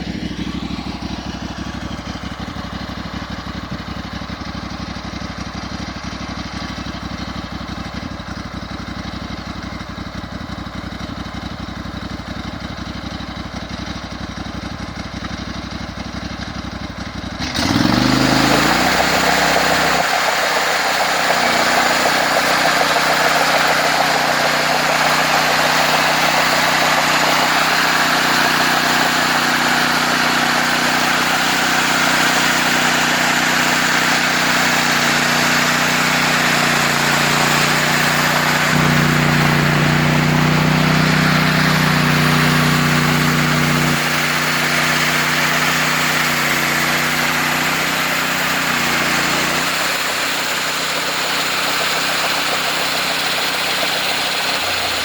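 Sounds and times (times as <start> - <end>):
sawmill engine running: 0.0 - 55.0
loud rushing noise: 18.7 - 51.0.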